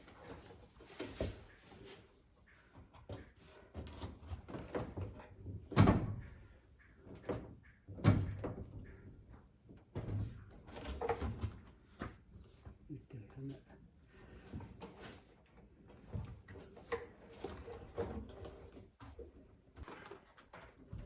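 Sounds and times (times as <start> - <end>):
knocks and thumps on washing machine: 7.9 - 8.9.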